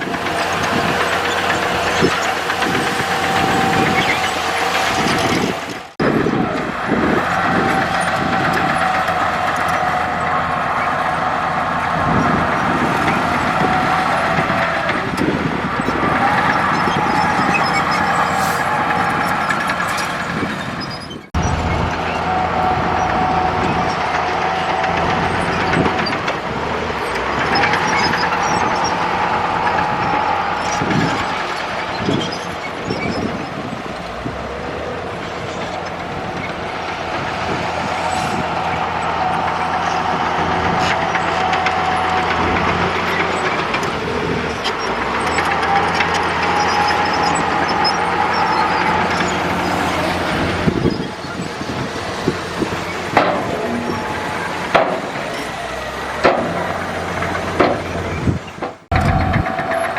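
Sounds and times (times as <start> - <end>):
bulldozer diesel engine running: 0.0 - 59.9
high tone: 21.4 - 25.7.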